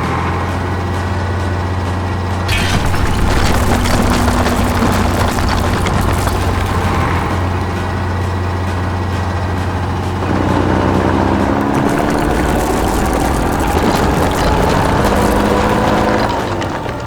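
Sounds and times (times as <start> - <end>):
heavy machine engine revving: 2.5 - 8.5, 10.3 - 17.0.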